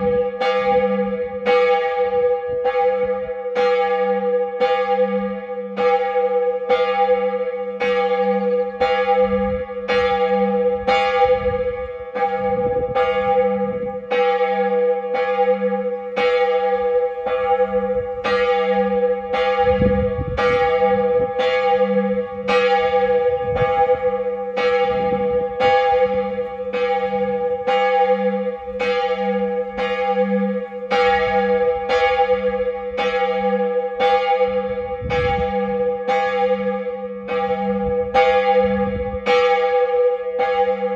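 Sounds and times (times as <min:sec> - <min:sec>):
church bell ringing: 0:00.0 - 0:40.9.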